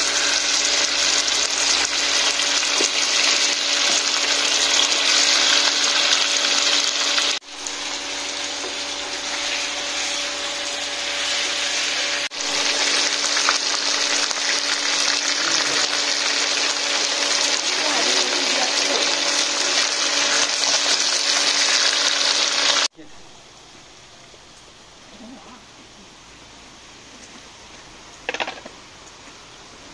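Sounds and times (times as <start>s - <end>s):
food sizzling in a pan: 0.0s - 22.9s.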